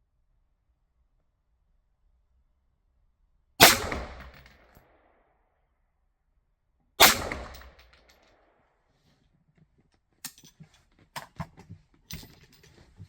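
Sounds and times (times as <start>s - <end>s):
rifle shot echoing: 3.6s - 4.5s, 7.0s - 7.8s.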